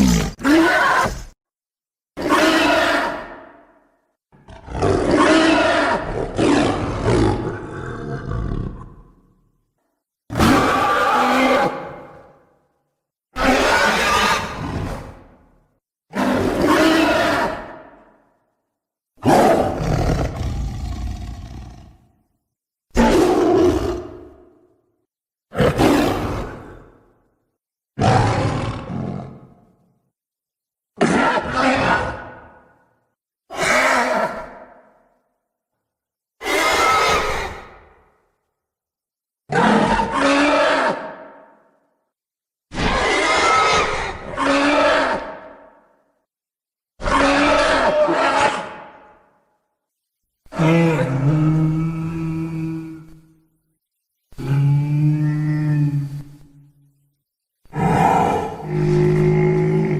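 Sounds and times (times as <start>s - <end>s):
monster roar: 0.0s - 1.4s, 50.5s - 53.2s, 57.7s - 59.9s.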